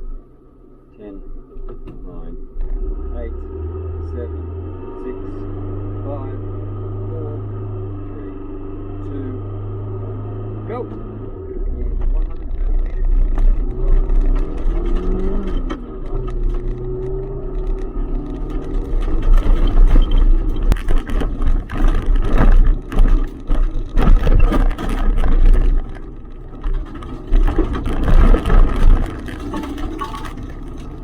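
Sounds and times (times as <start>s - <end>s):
rally car engine accelerating: 0.0s - 31.0s
sharp knocks and clatters: 12.1s - 31.0s.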